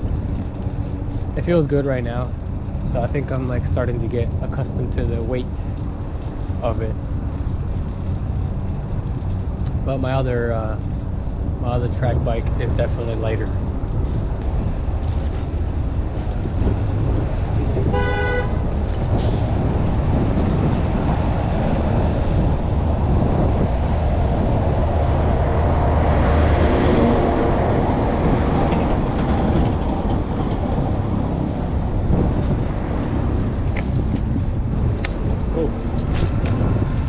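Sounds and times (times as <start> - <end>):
city traffic rumble: 0.0 - 37.0
car horn honk: 17.9 - 18.6.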